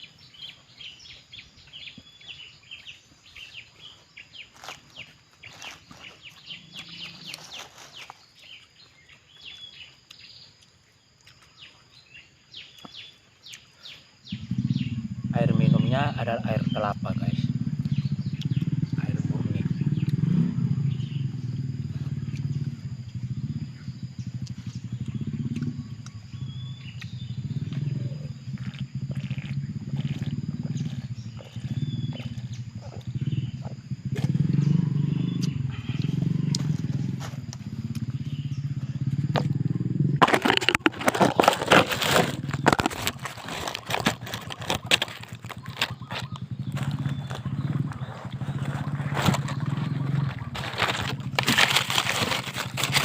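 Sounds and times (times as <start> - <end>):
chewing: 9.5 - 11.7, 27.0 - 34.6.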